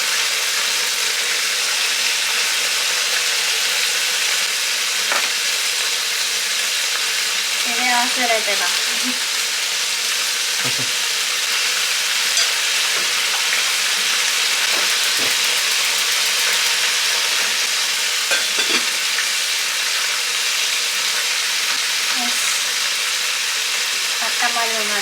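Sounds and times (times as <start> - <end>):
food sizzling in frying pan: 0.0 - 25.0
utensil knocking on pan: 14.7 - 16.8.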